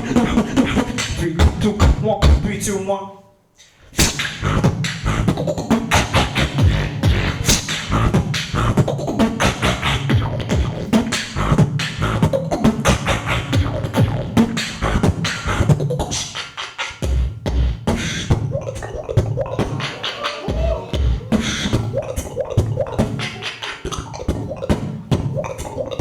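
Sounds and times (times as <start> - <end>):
person beatboxing: 0.0 - 3.0, 3.6 - 26.0.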